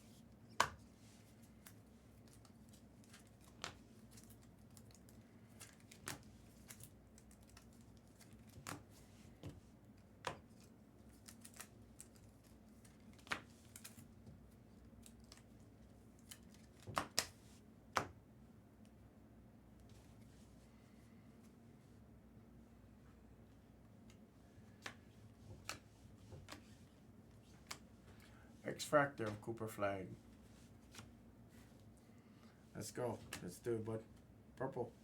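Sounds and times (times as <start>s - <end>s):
cards clicking and snapping: 1.6s - 14.1s, 14.9s - 15.6s, 16.2s - 17.4s, 24.8s - 25.0s, 25.6s - 26.7s, 27.6s - 27.9s.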